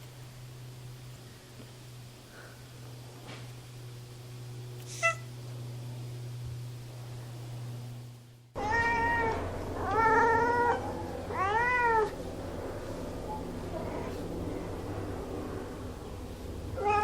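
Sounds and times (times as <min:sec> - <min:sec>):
steady low hum: 0:00.0 - 0:17.0
cat meowing: 0:05.0 - 0:05.3, 0:08.6 - 0:12.1, 0:16.8 - 0:17.0.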